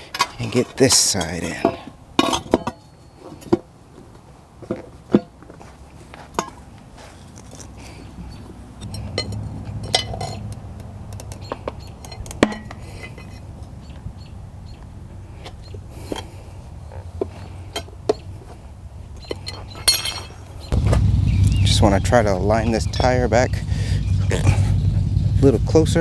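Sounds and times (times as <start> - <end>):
metal tire spoons knocking on rim: 0.0 - 3.7, 6.2 - 21.0
low steady rumble: 5.8 - 26.0.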